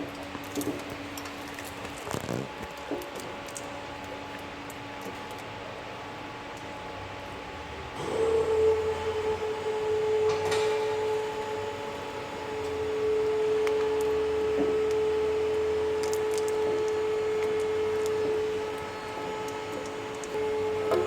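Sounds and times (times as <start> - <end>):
motor whine: 7.8 - 21.0
low hum: 7.9 - 21.0.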